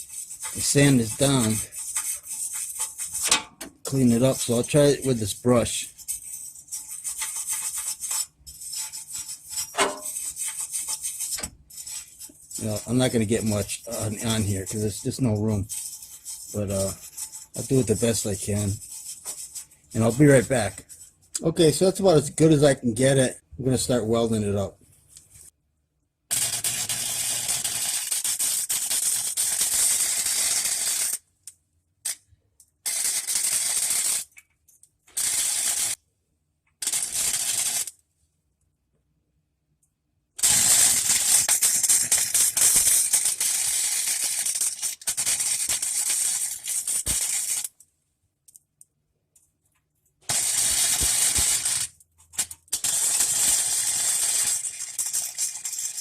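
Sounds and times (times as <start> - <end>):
welder arc crackling: 0.0 - 9.0, 9.7 - 20.8, 35.1 - 36.0, 36.8 - 37.9, 40.4 - 47.8, 50.3 - 56.0.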